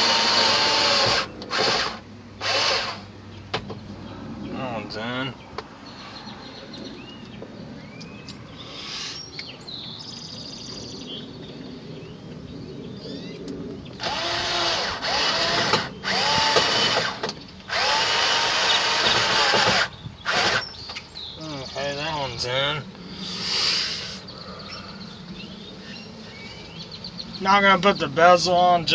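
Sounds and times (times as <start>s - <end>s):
power drill driving screws: 0.0s - 3.0s, 14.0s - 20.8s
faint bird chirps: 24.0s - 28.2s.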